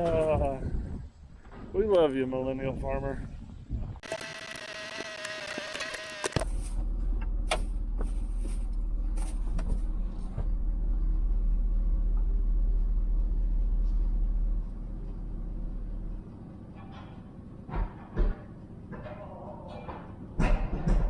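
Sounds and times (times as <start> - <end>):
sharp clicks and knocks: 4.0 - 8.1
vehicle engine rumble: 5.4 - 19.0.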